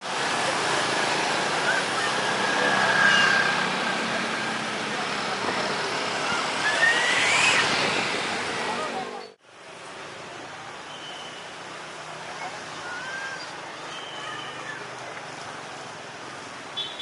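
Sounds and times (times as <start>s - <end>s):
loud engine noise: 0.0s - 9.4s.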